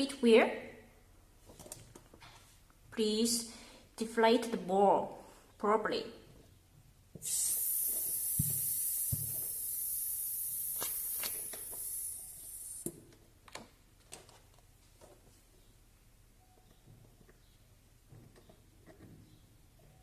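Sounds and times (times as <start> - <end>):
air hissing out of ball: 7.2 - 12.9.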